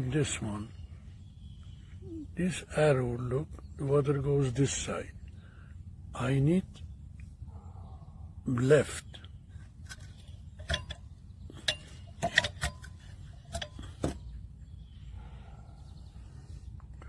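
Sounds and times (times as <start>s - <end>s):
low background rumble: 0.0s - 17.0s
metal fittings clinking: 9.9s - 14.2s.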